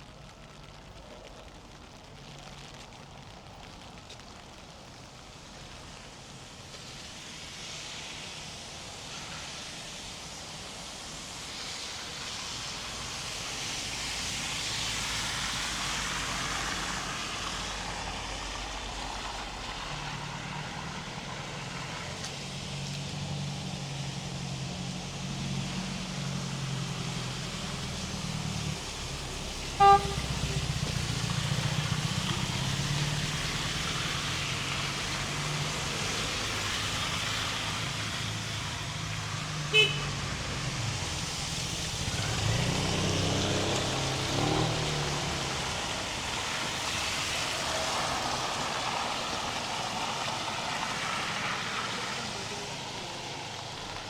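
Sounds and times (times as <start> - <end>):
car horn toot: 29.8 - 30.8, 39.7 - 40.1.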